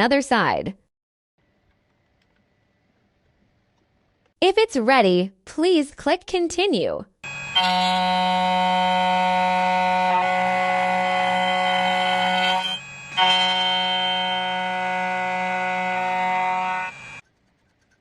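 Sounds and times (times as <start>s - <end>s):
key cutting machine whine: 7.2s - 17.2s.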